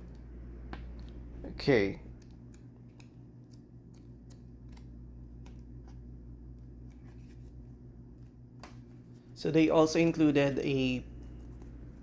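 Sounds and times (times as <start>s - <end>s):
steady low hum: 0.0s - 12.0s
paper and card being handled: 2.1s - 9.4s.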